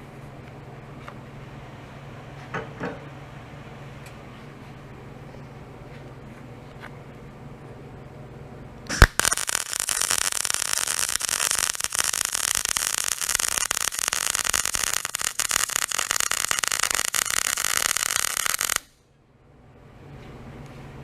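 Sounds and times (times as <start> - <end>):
welding arc crackling sizzle: 8.9 - 19.0
welding arc striking pop: 8.9 - 19.0.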